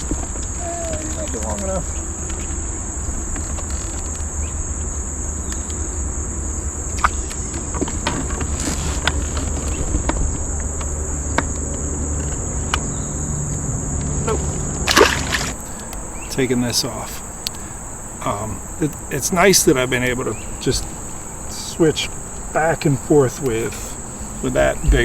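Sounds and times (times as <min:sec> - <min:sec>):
insects buzzing: 0:00.0 - 0:25.0.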